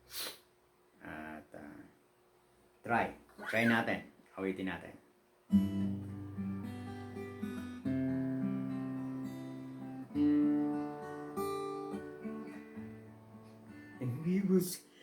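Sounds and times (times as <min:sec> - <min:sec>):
acoustic guitar strumming chords: 0:05.5 - 0:14.9.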